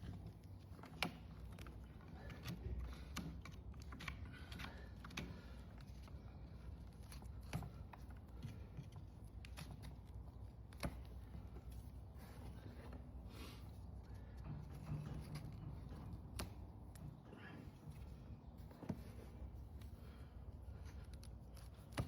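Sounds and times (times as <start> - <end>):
hoof trimming clicks and scrapes: 0.0 - 22.0.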